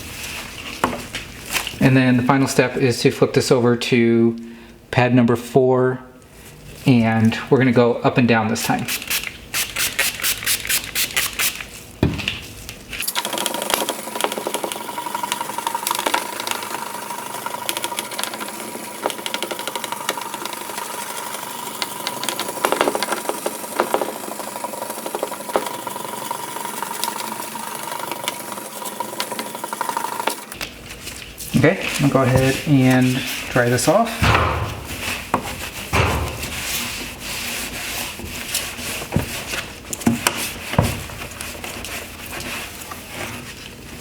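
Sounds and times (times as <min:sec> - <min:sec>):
hand sanding scrubbing: 0:31.6 - 0:39.7.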